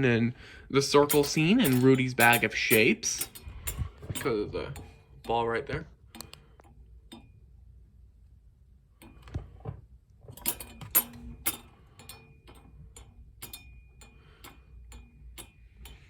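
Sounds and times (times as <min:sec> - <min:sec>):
desk toy clicking: 0:06.2 - 0:07.2.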